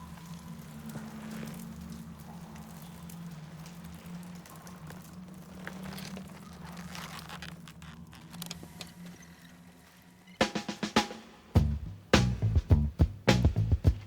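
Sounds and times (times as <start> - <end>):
small crunches and crackles: 0.0 - 10.4.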